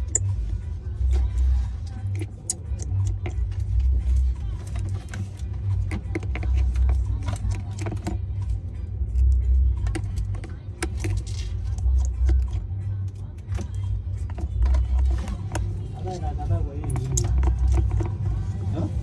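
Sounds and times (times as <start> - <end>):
steady low rumble: 0.0 - 19.0
sharp clicks and taps: 2.0 - 3.4.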